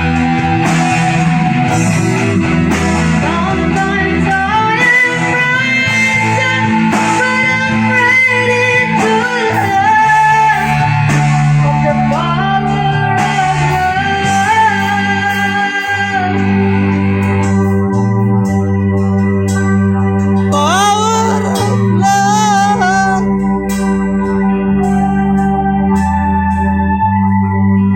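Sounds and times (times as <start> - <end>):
drums and cymbals: 0.0 - 7.5, 10.5 - 12.4
electric guitar: 0.0 - 27.9
sustained bass: 0.0 - 27.9
person singing: 20.4 - 23.4.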